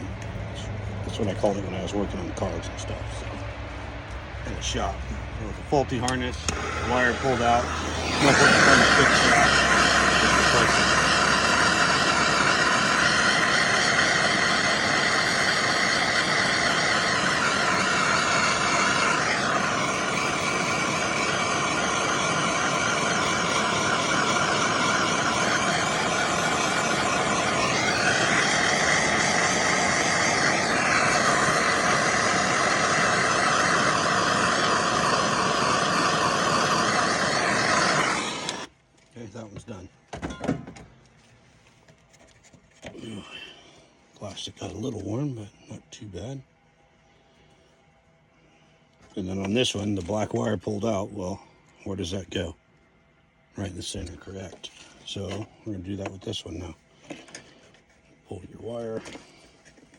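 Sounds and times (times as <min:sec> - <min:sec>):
heat gun blowing: 0:06.0 - 0:38.7.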